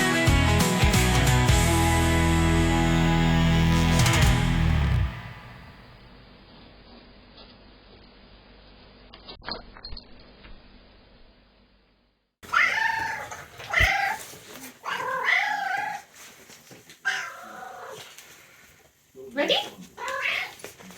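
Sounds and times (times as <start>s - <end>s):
cat meowing loudly: 12.5s - 14.2s, 14.8s - 16.1s, 17.0s - 18.1s, 20.0s - 20.6s.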